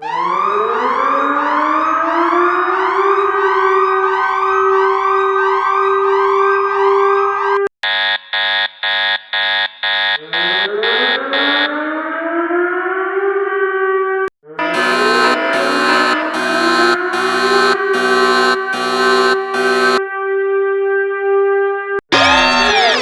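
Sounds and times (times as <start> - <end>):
emergency siren winding up: 0.0 - 13.9, 14.6 - 20.0, 22.1 - 23.0
high electronic alert beeps: 7.8 - 11.7, 14.6 - 20.0.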